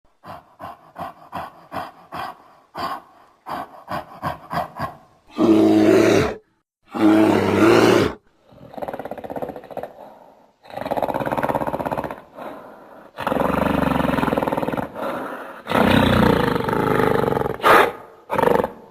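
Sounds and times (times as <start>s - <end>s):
rough growl: 0.1s - 18.9s
loud creature roars: 3.9s - 10.0s.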